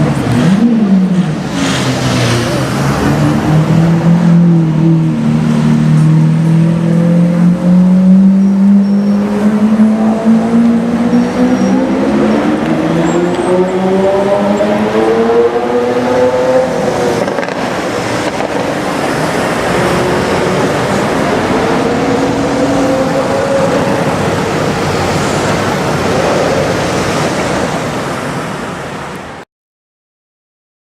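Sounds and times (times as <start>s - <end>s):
road noise: 0.0s - 29.4s.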